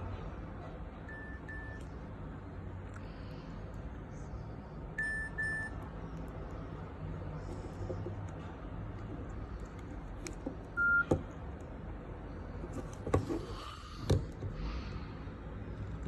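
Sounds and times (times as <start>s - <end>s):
mobile phone beep: 1.1s - 1.8s, 5.0s - 5.8s, 10.8s - 11.1s.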